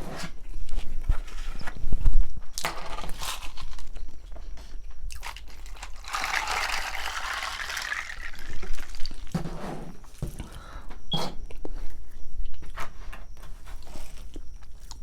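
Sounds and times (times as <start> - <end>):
crunchy bites and chewing: 5.1 - 7.3.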